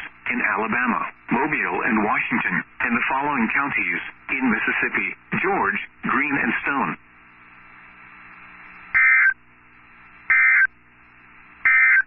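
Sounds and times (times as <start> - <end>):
faint radio hiss: 0.0 - 12.0
two-tone warbling data bursts: 8.8 - 9.4, 10.3 - 10.7, 11.6 - 12.0.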